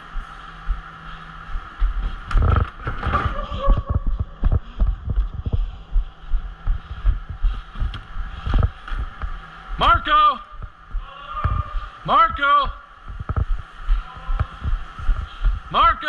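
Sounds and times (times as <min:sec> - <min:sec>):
footsteps thumping: 0:01.6 - 0:09.4, 0:13.0 - 0:15.7.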